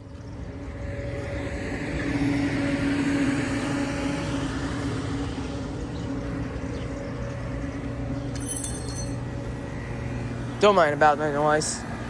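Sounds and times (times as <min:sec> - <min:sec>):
steady mechanical hum: 0:00.0 - 0:12.0.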